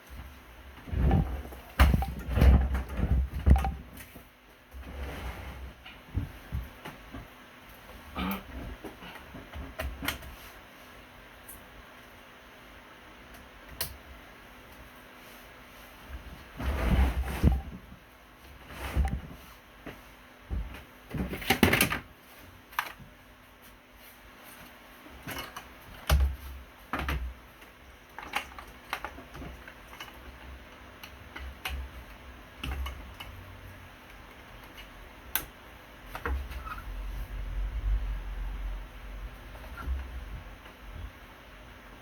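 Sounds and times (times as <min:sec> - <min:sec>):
clicks and rustles of hands with tools: 0:24.5 - 0:36.9.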